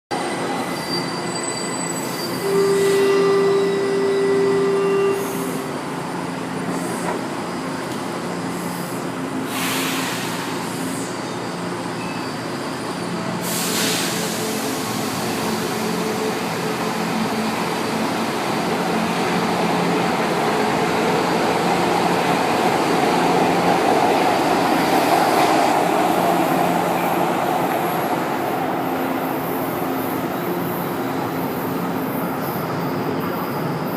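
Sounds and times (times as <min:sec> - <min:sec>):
metro train running: 0:00.1 - 0:33.9
loud steady tone: 0:02.4 - 0:05.7.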